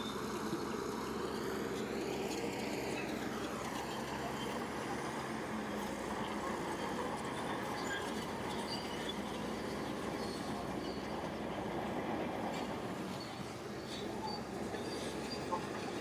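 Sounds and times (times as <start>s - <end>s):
bulldozer engine drone: 0.0s - 16.0s
steel tracks squeaking and clanking: 6.5s - 16.0s.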